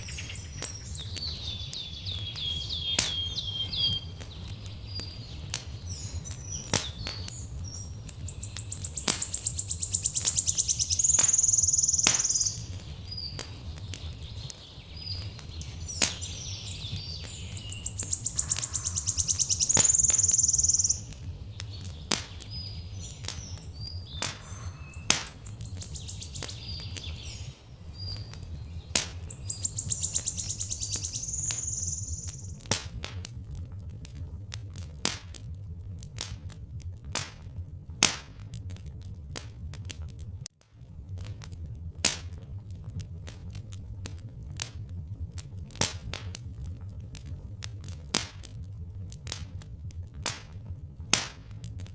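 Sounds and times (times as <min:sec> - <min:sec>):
songbird trilling: 0:00.0 - 0:32.6
steady low rumble: 0:00.0 - 0:51.9
wood fire crackling: 0:00.0 - 0:51.9.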